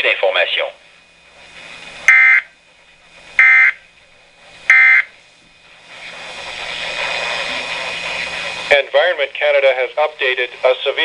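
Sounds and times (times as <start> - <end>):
radio hiss: 5.7 - 11.0.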